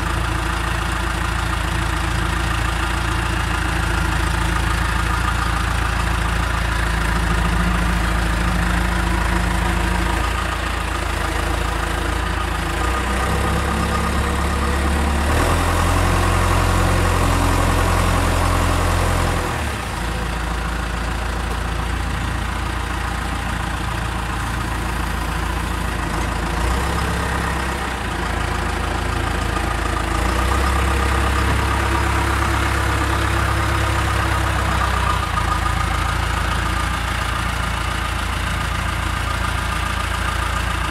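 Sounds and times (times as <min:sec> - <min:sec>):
diesel engine running: 0:00.0 - 0:40.9.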